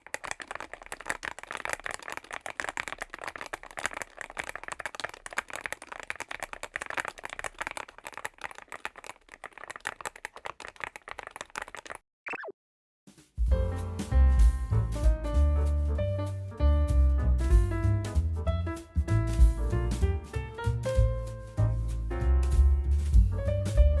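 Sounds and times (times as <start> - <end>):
mechanical keyboard typing: 0.0 - 12.0.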